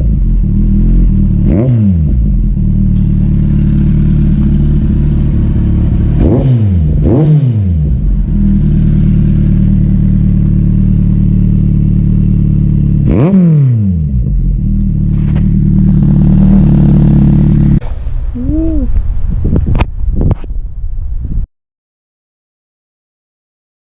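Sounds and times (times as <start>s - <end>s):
motorcycle engine idling: 0.0s - 13.3s, 13.9s - 17.8s
motorcycle engine revving: 0.0s - 17.8s.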